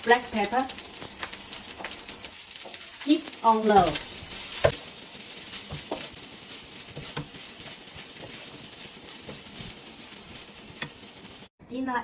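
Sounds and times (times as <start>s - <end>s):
rice sizzling in a pan: 0.0s - 11.6s
stirring knocks: 3.7s - 11.5s.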